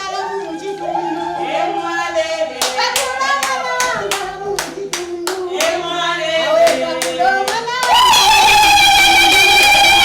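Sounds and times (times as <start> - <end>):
voices singing: 0.0 - 10.0
rhythmic hand clapping: 2.5 - 10.0.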